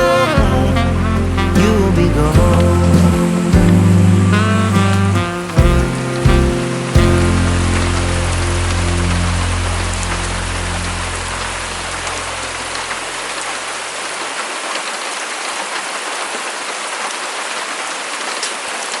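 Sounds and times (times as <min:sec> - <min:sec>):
low background music: 0:00.0 - 0:12.2
heavy rain falling: 0:00.0 - 0:19.0
raindrops striking close by: 0:00.0 - 0:19.0.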